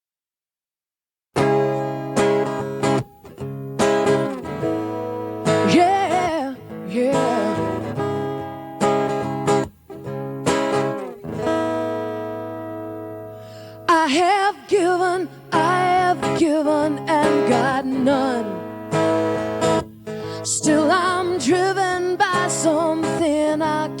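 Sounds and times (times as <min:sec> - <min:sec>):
acoustic guitar chords: 0:01.4 - 0:24.0
wordless vocal: 0:05.6 - 0:08.2, 0:13.8 - 0:18.7.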